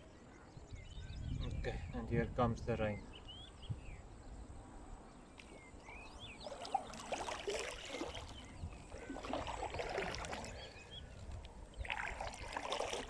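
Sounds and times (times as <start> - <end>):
birds chirping: 0.0 - 13.0
paddle splashing through water: 6.4 - 13.0.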